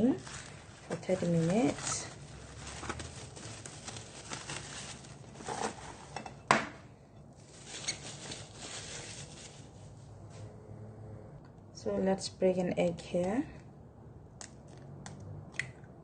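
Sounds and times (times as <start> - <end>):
faint rustling and handling noises: 0.0 - 6.5, 7.2 - 10.5.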